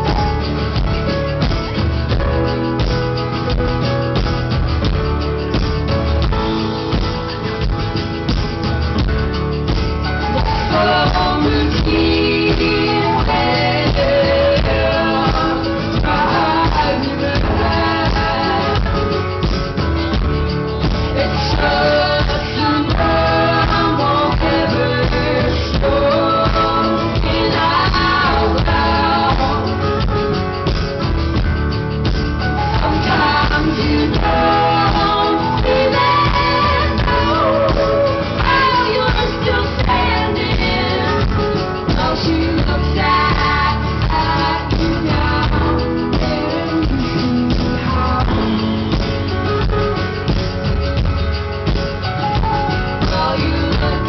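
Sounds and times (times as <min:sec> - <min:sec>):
drums: 0:00.0 - 0:54.0
strummed guitar: 0:00.0 - 0:54.0
person singing: 0:10.4 - 0:19.4, 0:21.0 - 0:30.1, 0:32.7 - 0:49.2, 0:53.0 - 0:54.0.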